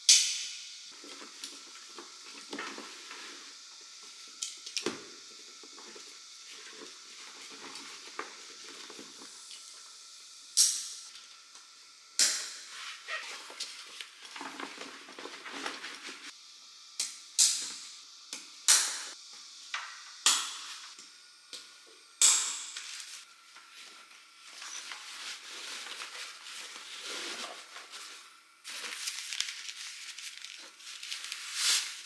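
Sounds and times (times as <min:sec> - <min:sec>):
rustling and handling noise: 0:00.9 - 0:09.8, 0:12.7 - 0:16.3, 0:22.8 - 0:32.0.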